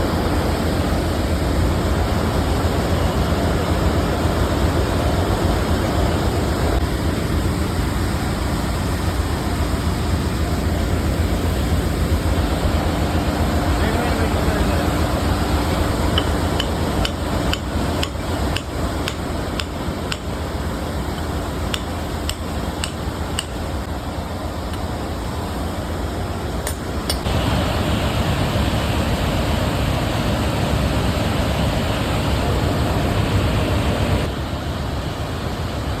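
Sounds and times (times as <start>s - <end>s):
engine-room machinery din: 0.0s - 25.8s, 26.5s - 36.0s
sharp metal hammer strikes: 16.1s - 20.3s, 26.6s - 27.3s.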